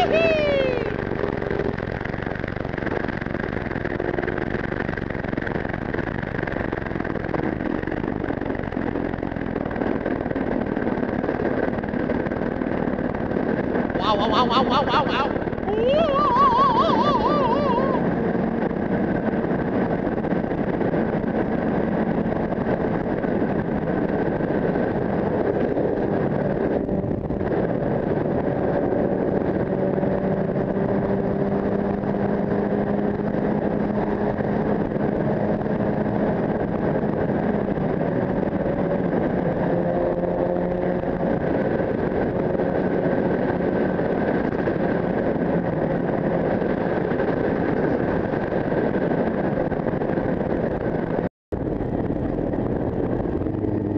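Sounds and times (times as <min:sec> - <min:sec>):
motorcycle engine cruising: 0:00.0 - 0:53.9
wind noise on helmet: 0:00.0 - 0:53.9.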